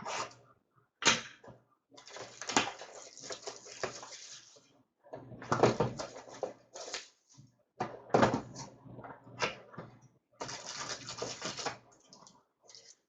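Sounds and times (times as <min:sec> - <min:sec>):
packaging tearing and crinkling: 0:10.4 - 0:11.7.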